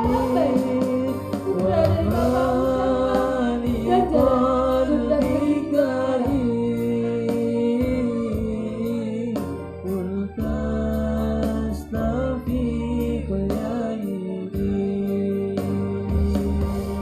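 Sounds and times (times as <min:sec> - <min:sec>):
male students singing: 0:00.0 - 0:16.6
sustained instrumental accompaniment: 0:00.0 - 0:17.0.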